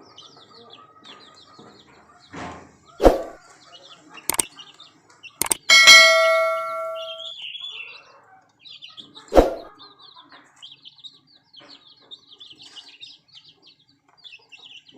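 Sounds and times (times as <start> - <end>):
bright bell-like ding: 5.4 - 7.3.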